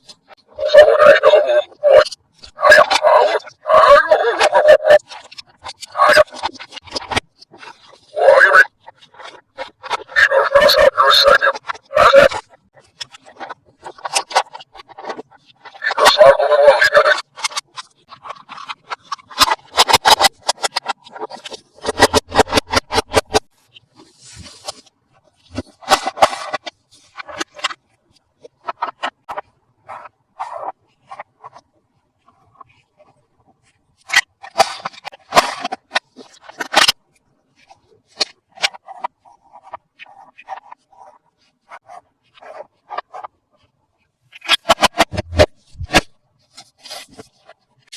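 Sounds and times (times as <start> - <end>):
plastic toys clicking: 2.0 - 23.4.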